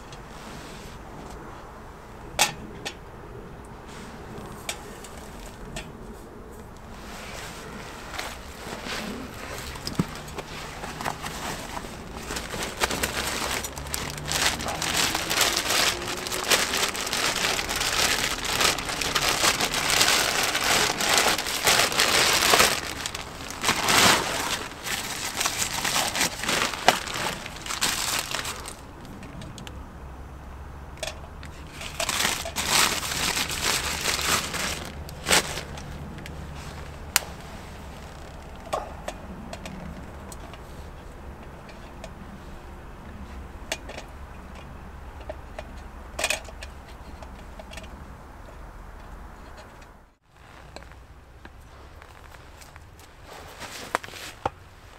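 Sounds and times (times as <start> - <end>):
material rustling and crinkling: 6.8 - 29.1, 31.5 - 38.7, 50.2 - 54.9.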